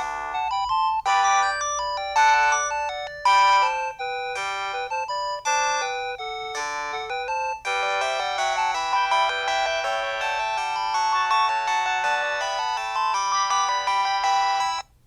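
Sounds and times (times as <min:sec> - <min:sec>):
polyphonic phone ringtone: 0:00.0 - 0:14.9.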